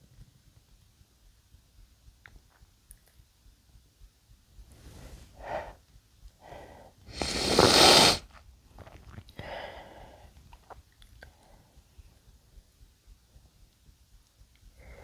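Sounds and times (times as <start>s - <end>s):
short breaths drawn in: 6.4s - 8.2s.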